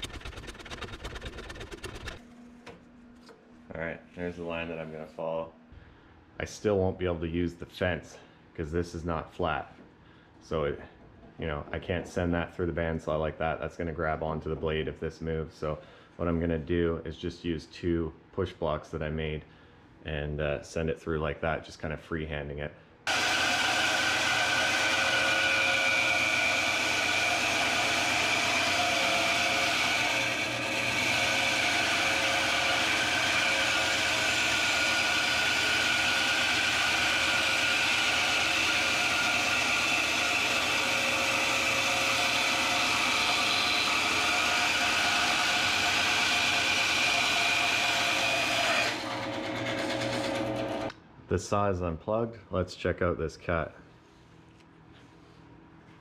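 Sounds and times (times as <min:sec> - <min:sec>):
bandsaw cutting wood: 0:00.0 - 0:02.2, 0:23.1 - 0:50.9.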